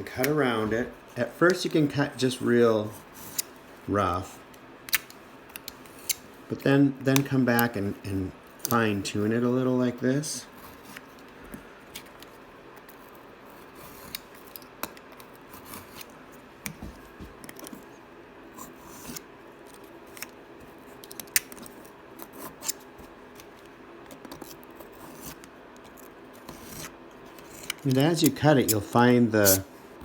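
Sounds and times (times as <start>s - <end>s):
knife scraping: 26.4s - 29.7s
knife cutting strokes: 27.6s - 29.7s.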